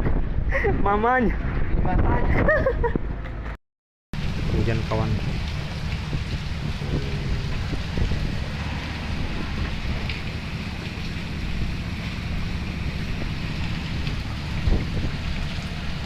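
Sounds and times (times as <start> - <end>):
low rumble: 4.2 - 16.0
steady rain falling: 4.2 - 16.0.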